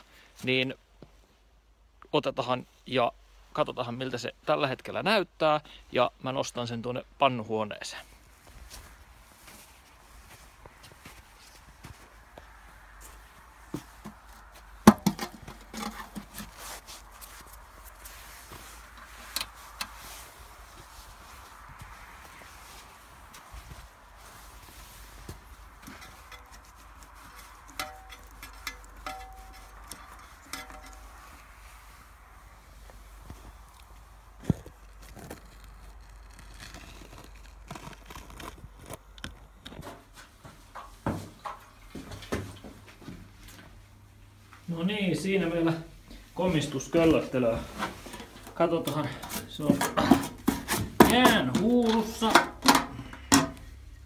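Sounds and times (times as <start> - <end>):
footsteps: 8.0 - 36.1, 39.7 - 44.7
knocks and clunks of engine carried: 13.7 - 16.6, 25.2 - 31.5, 39.7 - 43.8, 47.4 - 54.0.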